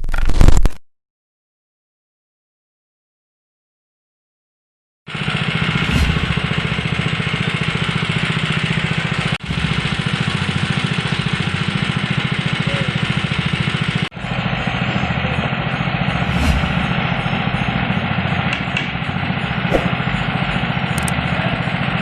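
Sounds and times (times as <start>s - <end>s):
huller machine running: 5.1s - 22.0s.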